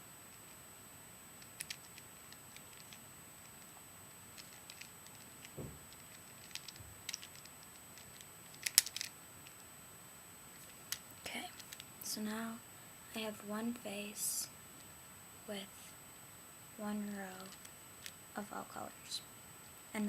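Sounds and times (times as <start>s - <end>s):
puzzle cube plastic clicks: 1.4s - 9.6s, 10.6s - 11.9s.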